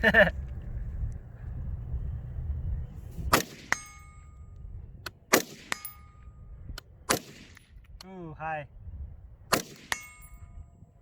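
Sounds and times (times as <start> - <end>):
rifle shots: 3.3 - 3.9, 5.3 - 6.0, 7.1 - 7.7, 9.5 - 10.2
bullet ringing on steel target: 3.6 - 4.6, 5.6 - 6.5, 9.6 - 10.8.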